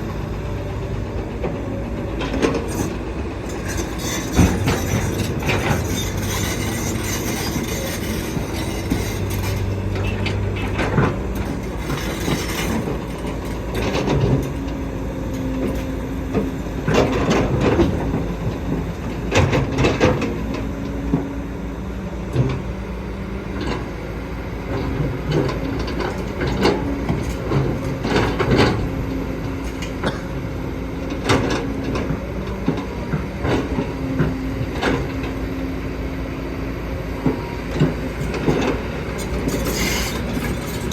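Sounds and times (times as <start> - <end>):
diesel engine running: 0.0 - 40.9
hydraulic whine: 0.0 - 40.9
bucket and tracks clanking: 1.3 - 21.3, 37.2 - 40.9.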